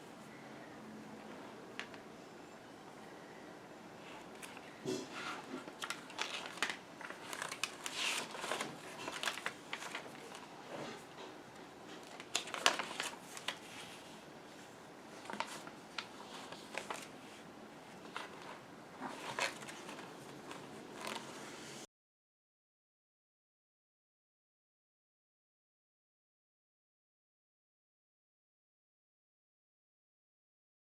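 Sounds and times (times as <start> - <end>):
paper crinkling and rustling: 4.0 - 21.9.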